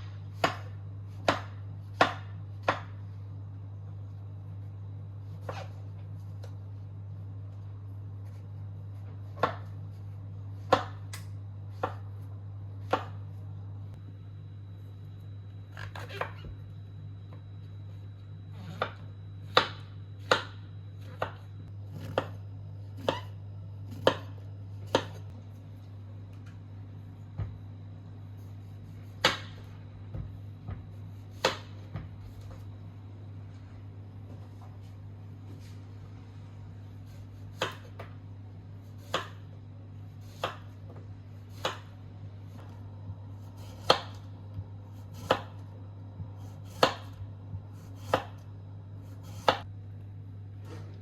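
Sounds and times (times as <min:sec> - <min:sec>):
knife chopping on cutting board: 0:00.0 - 0:03.0, 0:09.1 - 0:12.2, 0:12.8 - 0:13.2, 0:18.8 - 0:22.4, 0:23.9 - 0:25.3, 0:29.0 - 0:32.3, 0:37.1 - 0:38.1, 0:39.0 - 0:39.5, 0:40.1 - 0:42.8, 0:43.4 - 0:44.3, 0:44.9 - 0:45.6, 0:46.2 - 0:48.5, 0:49.1 - 0:49.7
steady low hum: 0:00.0 - 0:51.0.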